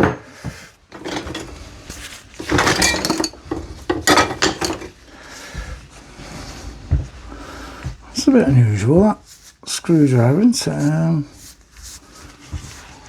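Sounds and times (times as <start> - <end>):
metal hand tools clinking: 1.0 - 1.6, 2.4 - 4.9.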